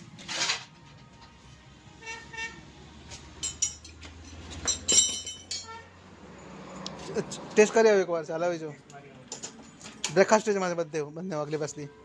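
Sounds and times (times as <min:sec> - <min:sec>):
vehicle horn beeps: 0:01.9 - 0:02.8, 0:05.6 - 0:06.0
metallic clinks and knocks: 0:03.3 - 0:05.8, 0:09.2 - 0:10.3.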